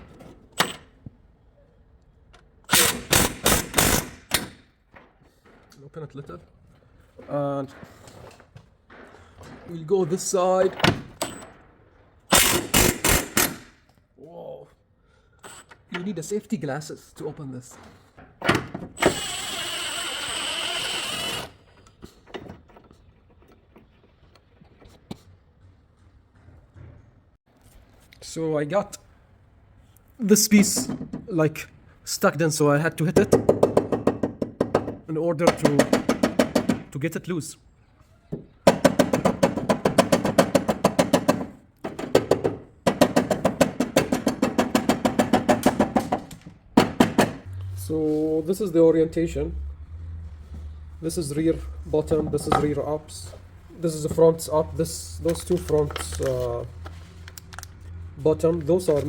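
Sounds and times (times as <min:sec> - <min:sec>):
power tool whining and rattling: 0:18.9 - 0:21.7.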